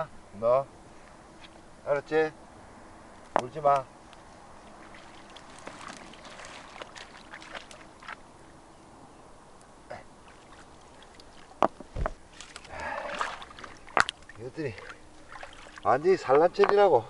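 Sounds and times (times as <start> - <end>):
water splashing in stream: 4.6 - 8.3, 10.2 - 16.4.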